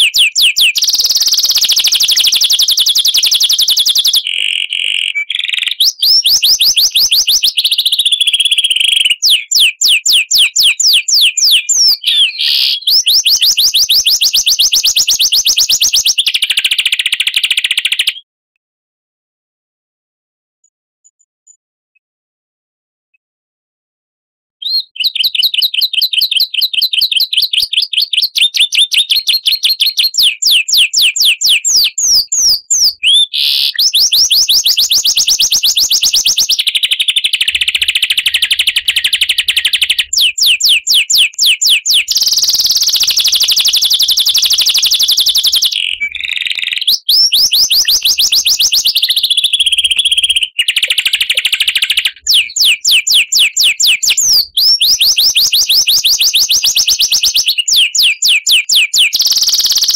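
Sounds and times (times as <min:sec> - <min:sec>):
songbird trilling and chirping: 0:00.0 - 0:18.2, 0:24.6 - 0:59.9.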